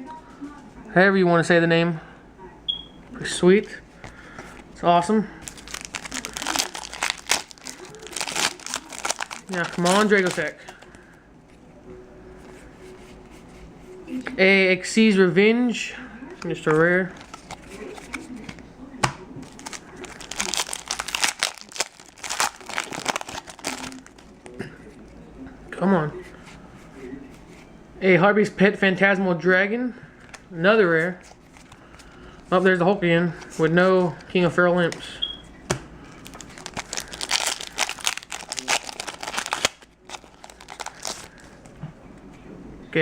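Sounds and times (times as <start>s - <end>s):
foil wrapper crinkling and tearing: 5.4s - 11.0s, 16.6s - 18.6s, 19.4s - 24.6s, 36.1s - 41.7s.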